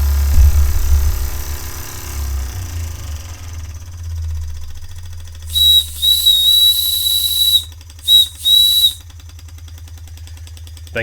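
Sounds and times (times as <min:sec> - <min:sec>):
toy steam engine running: 0:04.8 - 0:11.0
steam whistle blowing: 0:05.5 - 0:09.0.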